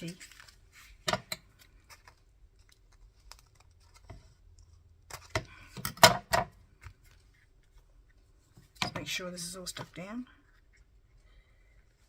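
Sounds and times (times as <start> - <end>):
paper rustling: 0.0 - 4.5.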